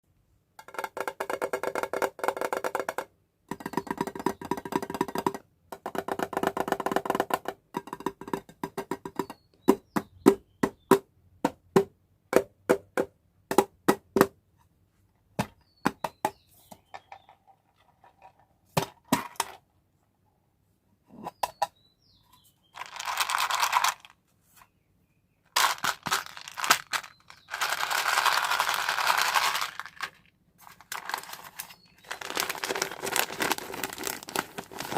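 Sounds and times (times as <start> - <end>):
candy packaging crinkling: 22.8 - 24.1, 25.6 - 34.9
hard candies rattling and pouring: 22.8 - 24.1, 25.6 - 34.9.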